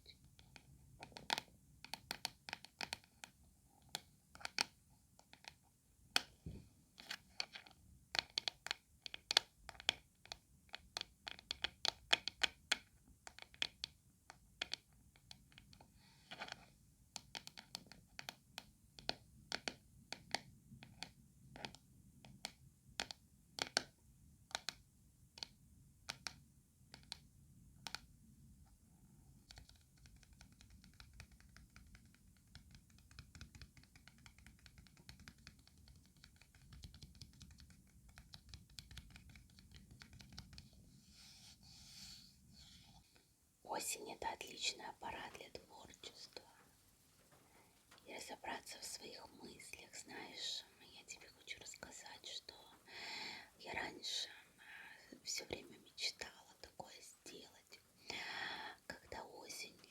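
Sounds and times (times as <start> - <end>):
tapping and scratching on hard object: 0.3 - 5.6, 7.0 - 23.9, 29.4 - 40.8.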